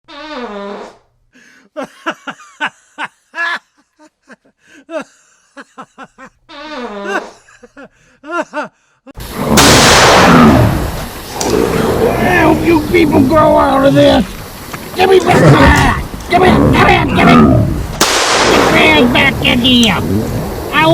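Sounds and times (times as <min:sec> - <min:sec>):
grunting and mumbling: 0:11.4 - 0:14.3, 0:15.0 - 0:17.9, 0:19.3 - 0:20.4
person groaning: 0:15.2 - 0:17.8.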